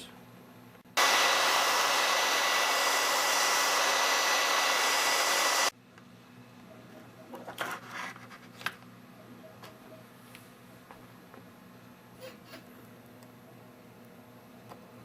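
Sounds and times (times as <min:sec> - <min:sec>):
hair dryer blowing: 0:00.9 - 0:05.8.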